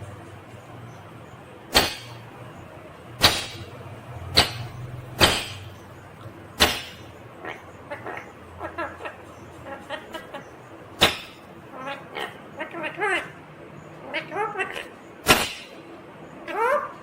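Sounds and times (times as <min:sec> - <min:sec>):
parakeet screeching: 0:06.7 - 0:13.4, 0:14.0 - 0:15.8, 0:16.4 - 0:17.0.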